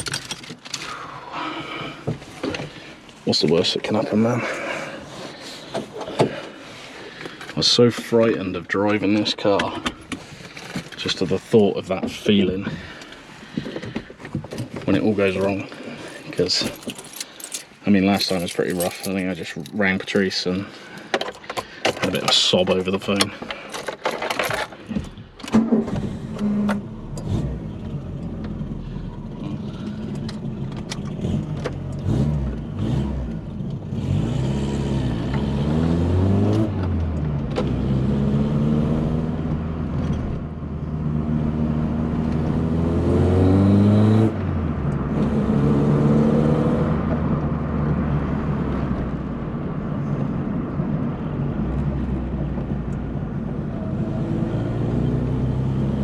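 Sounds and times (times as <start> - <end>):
car engine accelerating through gears: 25.5 - 56.0.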